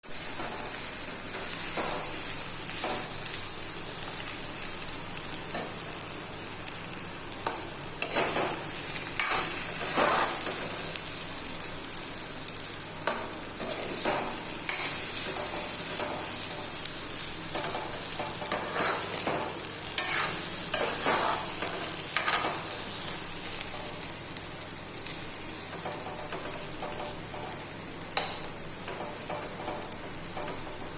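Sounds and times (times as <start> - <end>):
potatoes sizzling in hot oil: 0.0 - 30.9
spatula scraping pan: 8.0 - 10.6, 13.6 - 16.4, 17.6 - 22.6.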